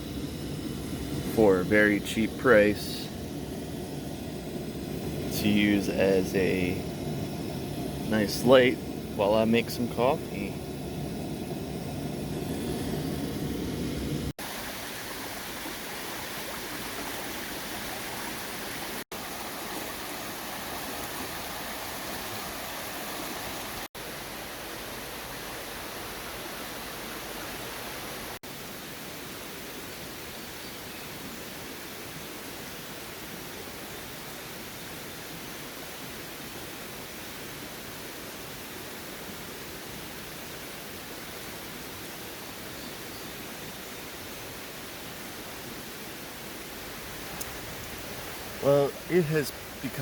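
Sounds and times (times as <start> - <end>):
creek water rushing: 0.0 - 29.7, 43.4 - 50.0.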